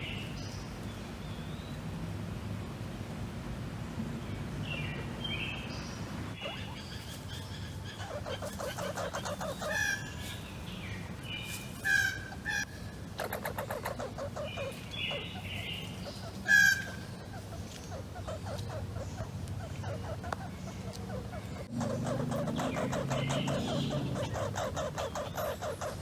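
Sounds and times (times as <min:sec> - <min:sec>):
squirrel chattering: 0:06.4 - 0:07.1, 0:07.7 - 0:10.0, 0:12.5 - 0:26.0.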